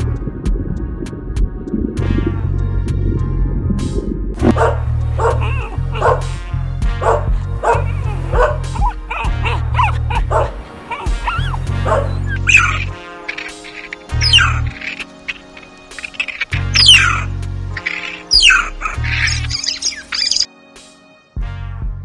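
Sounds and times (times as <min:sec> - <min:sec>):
background music: 0:00.0 - 0:22.0
dog yipping and whimpering: 0:04.6 - 0:06.2, 0:07.1 - 0:12.8.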